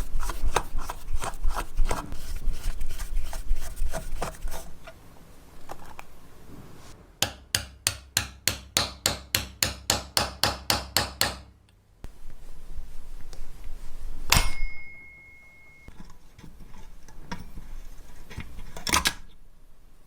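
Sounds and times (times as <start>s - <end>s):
hammer striking: 7.2s - 11.5s, 14.3s - 15.3s.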